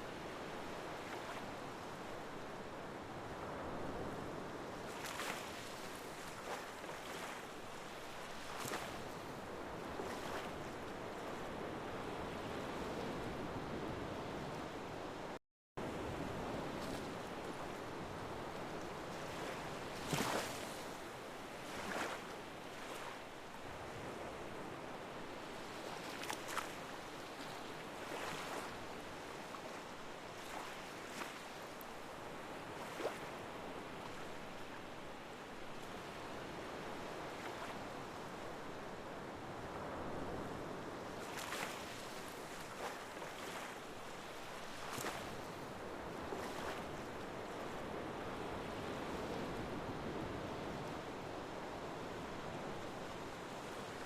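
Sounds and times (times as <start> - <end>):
wave splashes: 4.8 - 11.5, 15.9 - 24.3, 25.4 - 35.0, 39.7 - 47.9
waves rushing: 41.0 - 47.1.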